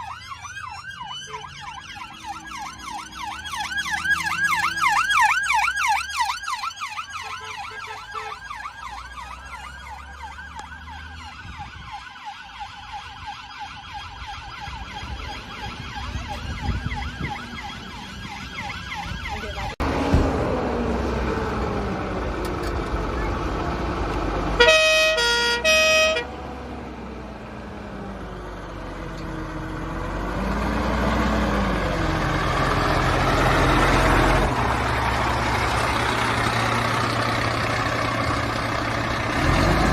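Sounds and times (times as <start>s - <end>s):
wail siren: 0.0s - 19.8s, 24.6s - 29.2s
yelp siren: 0.0s - 19.8s, 24.6s - 26.4s
heavy engine rumble: 14.7s - 39.9s
two-tone horn blast: 24.6s - 26.3s.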